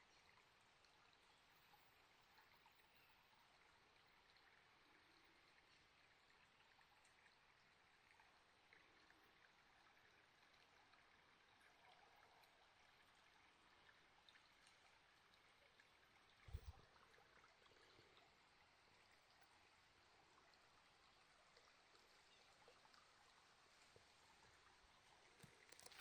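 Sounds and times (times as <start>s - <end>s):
trickle of flowing water: 0.0s - 26.0s
tiny ticks: 25.3s - 26.0s.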